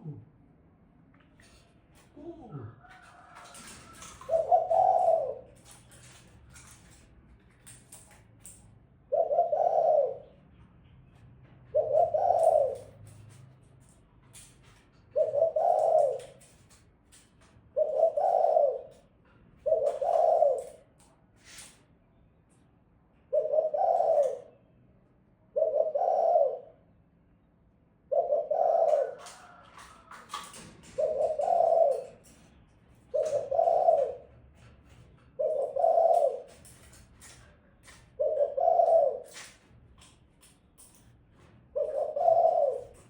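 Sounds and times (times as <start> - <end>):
dove cooing: 2.1 - 6.8, 9.0 - 10.4, 11.7 - 13.2, 14.3 - 16.7, 17.7 - 21.0, 23.3 - 24.6, 25.5 - 26.8, 28.0 - 39.6, 41.7 - 43.0.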